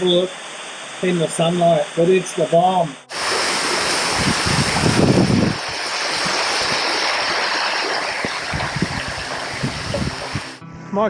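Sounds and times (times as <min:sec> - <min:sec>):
waterfall rushing: 0:03.1 - 0:10.6
wind buffeting microphone: 0:03.1 - 0:10.6.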